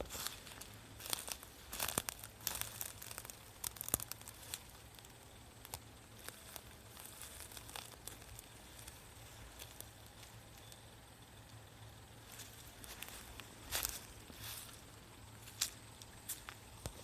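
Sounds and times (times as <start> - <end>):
irregular crackling and clicking: 0.0 - 10.8
faint low hum: 0.0 - 17.0.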